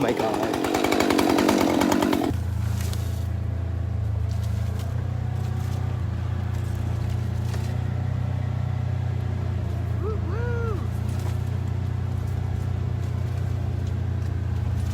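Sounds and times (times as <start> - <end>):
chainsaw cutting: 0.0 - 3.3, 9.6 - 14.9
low engine drone: 2.3 - 14.9.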